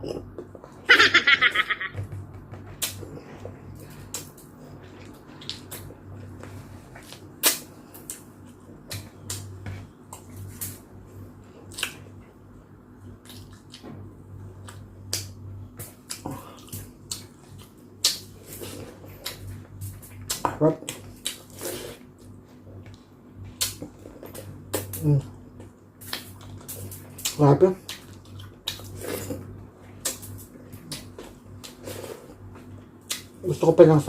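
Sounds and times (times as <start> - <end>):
chewing: 14.6 - 33.3.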